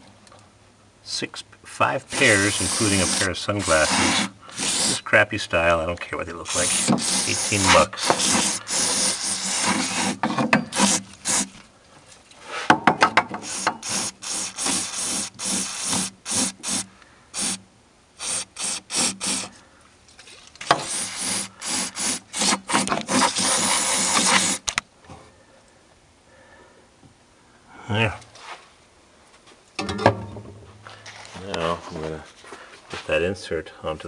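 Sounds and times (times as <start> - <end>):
hand tool scraping strokes: 2.1 - 5.2, 6.3 - 11.6, 12.4 - 17.6, 18.2 - 19.6, 20.2 - 24.8.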